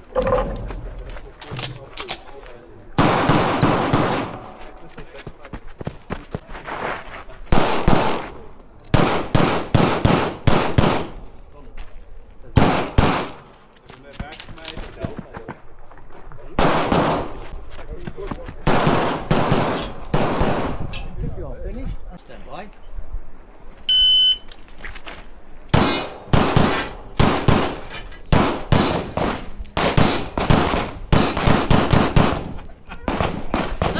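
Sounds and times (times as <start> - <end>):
pistol shots: 3.0 - 4.5, 7.5 - 8.3, 8.9 - 11.2, 12.6 - 13.4, 16.6 - 17.4, 18.7 - 20.8, 25.7 - 33.9.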